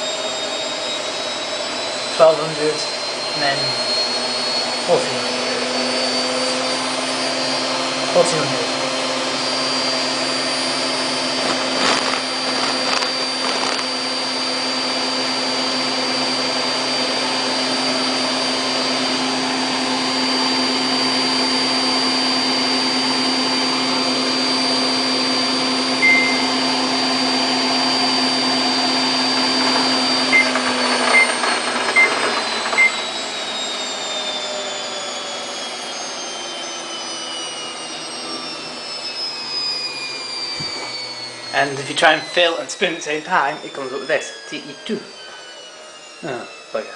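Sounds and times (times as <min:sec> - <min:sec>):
washing machine spinning whine: 0:00.0 - 0:46.9
short beeps: 0:26.0 - 0:26.6, 0:30.4 - 0:31.3.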